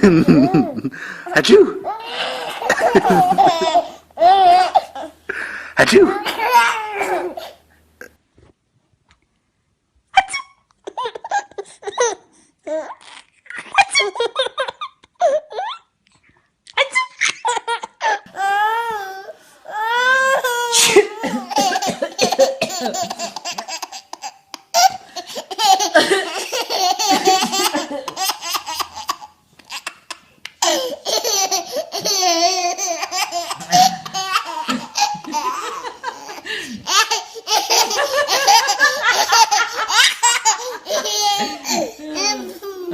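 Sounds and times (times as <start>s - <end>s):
babies laughing hysterically: 0.0s - 5.2s, 6.1s - 7.6s, 19.8s - 42.9s.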